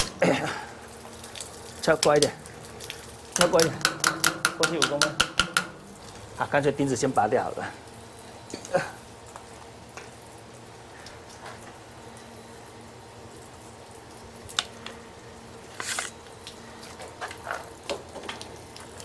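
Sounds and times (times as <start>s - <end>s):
faint steady hum: 0.0s - 19.0s
hand tool clicks and knocks: 3.4s - 5.8s.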